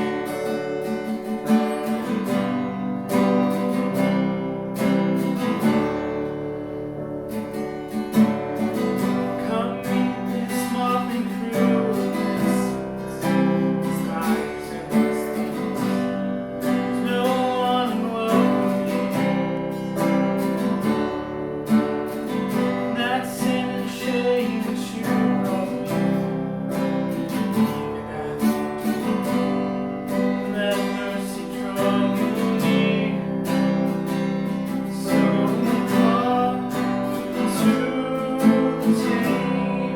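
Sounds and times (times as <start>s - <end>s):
strummed acoustic guitar: 0.0s - 39.9s
person singing: 8.9s - 20.9s, 22.3s - 39.9s.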